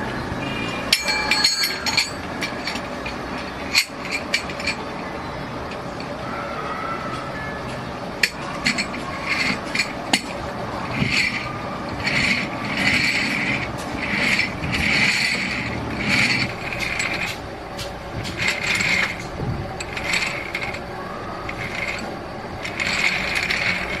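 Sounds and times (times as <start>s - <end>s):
rasping strokes on metal: 8.2s - 17.4s, 18.2s - 20.8s, 21.5s - 24.0s.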